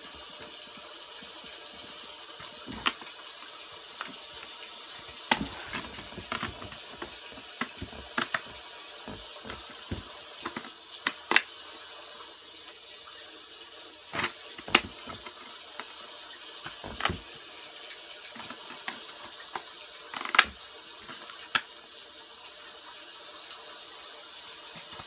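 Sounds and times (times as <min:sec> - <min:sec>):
plastic cases clicking and snapping: 0:01.8 - 0:11.5, 0:14.2 - 0:15.8, 0:16.7 - 0:17.3, 0:18.4 - 0:19.6, 0:20.2 - 0:21.7, 0:24.8 - 0:25.0.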